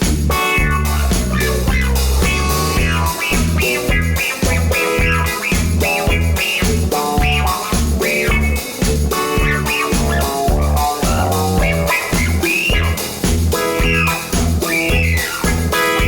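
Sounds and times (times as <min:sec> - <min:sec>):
guitar rock music: 0:00.0 - 0:16.0.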